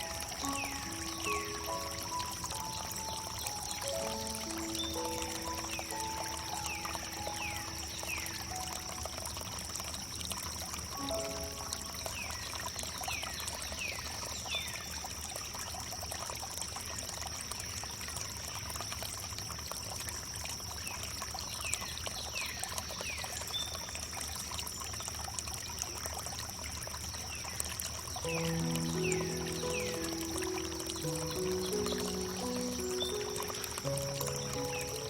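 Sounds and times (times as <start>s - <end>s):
water trickling over wood: 0.0s - 35.0s.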